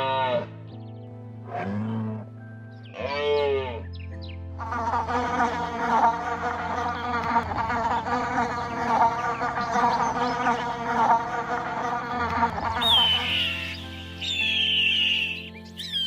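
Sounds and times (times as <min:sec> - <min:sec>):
insects buzzing: 0:04.6 - 0:16.0.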